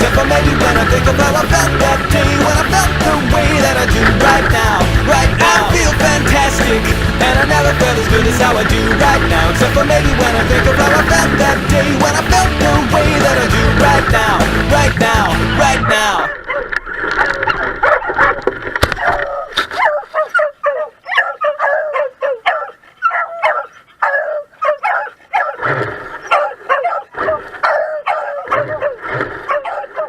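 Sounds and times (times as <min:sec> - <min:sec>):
song: 0:00.0 - 0:16.3
dogs yipping and barking: 0:16.2 - 0:30.0.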